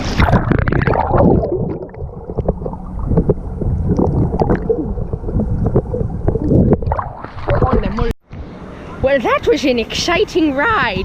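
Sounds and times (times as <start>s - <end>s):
water rushing and splashing: 0.0s - 8.1s
wind buffeting microphone: 0.0s - 11.0s.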